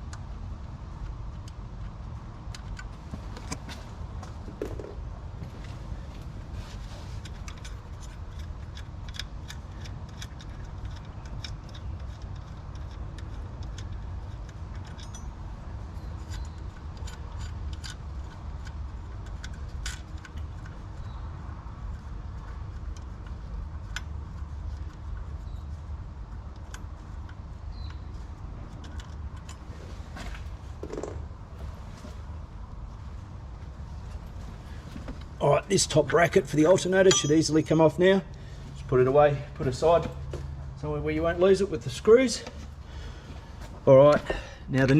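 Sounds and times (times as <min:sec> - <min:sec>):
steady low rumble: 0:00.0 - 0:44.9
metallic tool clicks and clinks: 0:10.1 - 0:15.4, 0:37.0 - 0:37.7.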